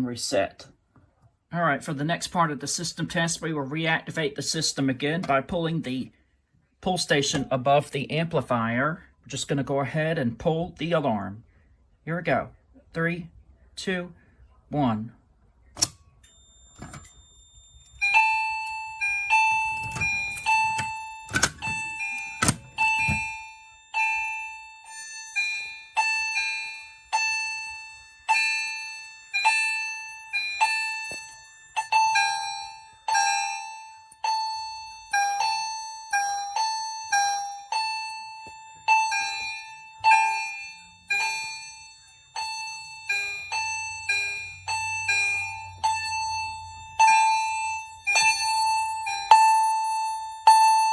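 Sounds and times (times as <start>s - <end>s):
fire alarm two-tone chimes: 15.8s - 50.9s.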